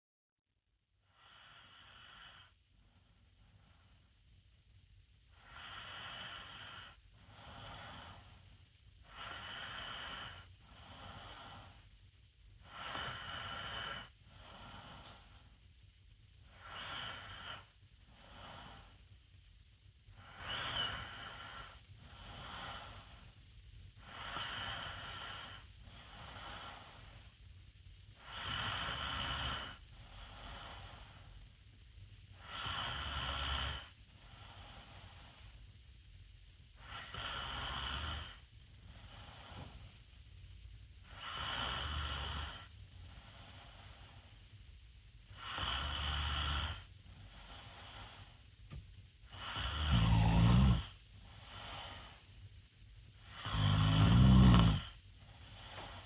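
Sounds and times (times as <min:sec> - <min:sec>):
boy snoring: 0:09.0 - 0:11.8, 0:12.6 - 0:15.1, 0:16.5 - 0:18.9, 0:20.2 - 0:23.1, 0:24.0 - 0:27.1, 0:28.2 - 0:31.1, 0:32.4 - 0:35.0, 0:36.8 - 0:38.4, 0:41.0 - 0:42.7, 0:45.4 - 0:46.9, 0:49.3 - 0:52.2, 0:53.2 - 0:56.0.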